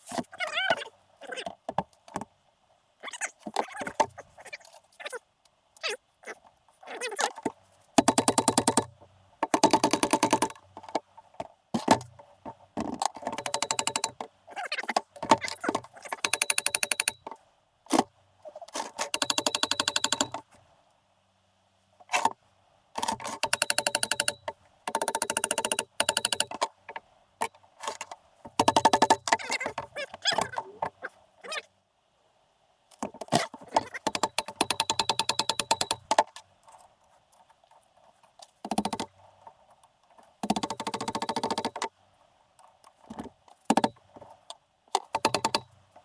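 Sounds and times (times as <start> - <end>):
tool clicking rapidly: 8.0 - 8.9, 9.5 - 10.6, 13.2 - 14.2, 14.8 - 17.3, 18.9 - 20.4, 23.0 - 26.7, 33.3 - 36.3, 38.6 - 39.1, 40.4 - 41.9, 45.0 - 45.7.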